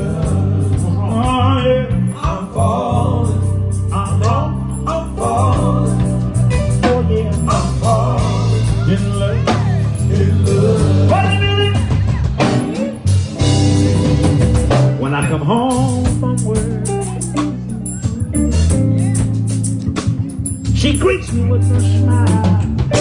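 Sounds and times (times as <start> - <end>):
soul band playing: 0.0 - 23.0.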